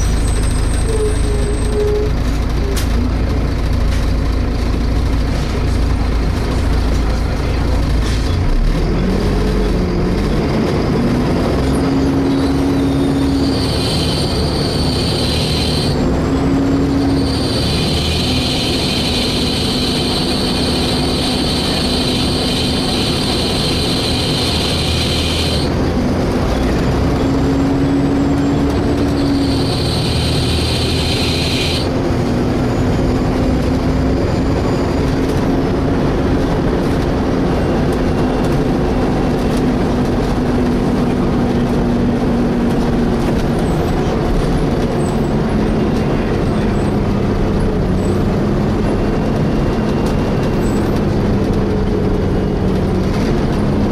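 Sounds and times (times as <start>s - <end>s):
high-pitched screech: 0.0s - 2.9s, 11.8s - 25.7s, 27.2s - 31.9s
bus engine whining: 0.0s - 53.9s.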